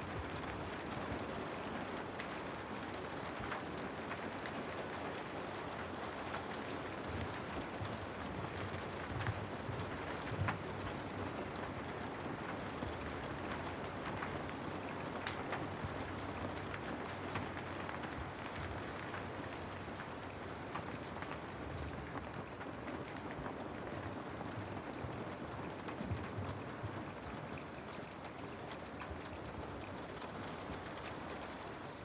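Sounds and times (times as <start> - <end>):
steady rain hiss: 0.0 - 32.0.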